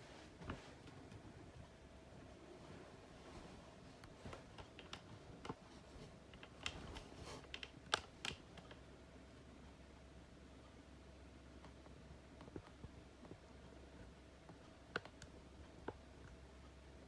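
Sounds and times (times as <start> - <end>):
light clicks and taps: 4.0 - 8.8, 11.6 - 16.8.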